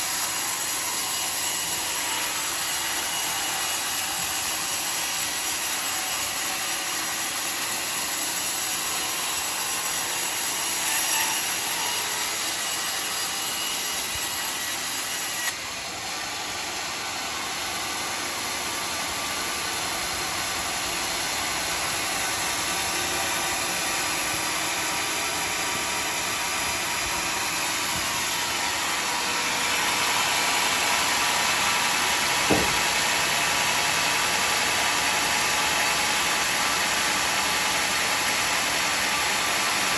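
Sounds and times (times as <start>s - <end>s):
bandsaw sawing through log: 0.0s - 39.9s
short knock: 32.4s - 32.9s.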